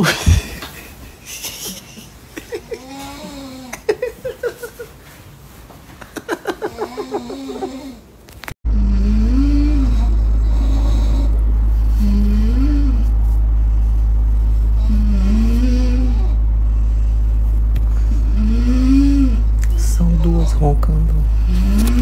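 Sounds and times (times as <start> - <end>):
person snoring loudly: 8.7 - 13.1, 14.8 - 17.0, 18.0 - 19.5
loud steady low rumble: 8.7 - 22.0.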